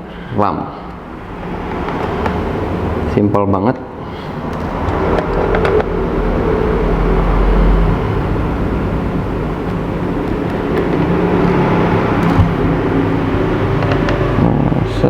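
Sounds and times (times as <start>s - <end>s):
rumbling background noise: 0.0s - 15.0s
low hum: 3.8s - 15.0s.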